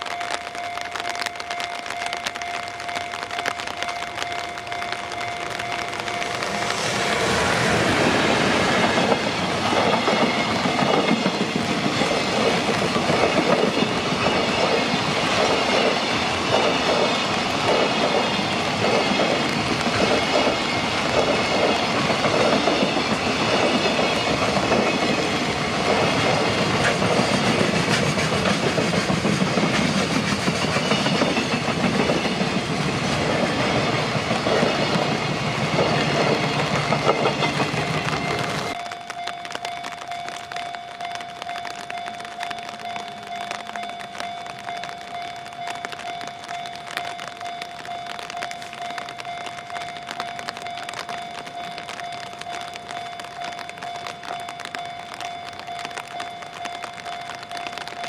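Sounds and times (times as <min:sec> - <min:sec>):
train wheels clacking on rail joints: 0:05.6 - 0:38.8.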